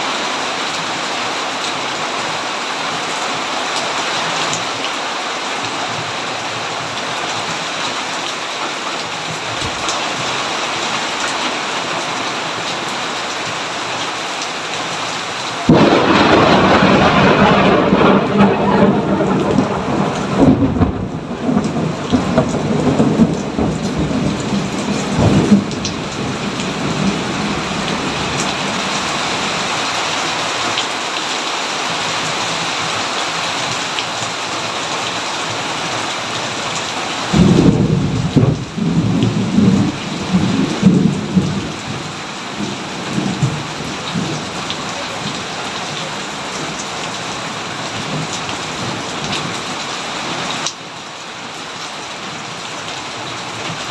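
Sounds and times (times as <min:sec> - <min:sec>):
steady rain falling: 0:00.0 - 0:53.9
thunder rumbling: 0:15.7 - 0:29.7, 0:37.3 - 0:45.4.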